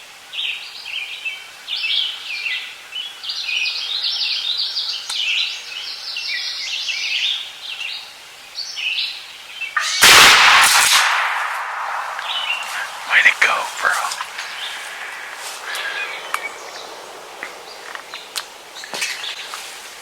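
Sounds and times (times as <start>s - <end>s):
shotgun blast: 9.8s - 13.1s
songbirds chirping and singing: 12.1s - 19.8s.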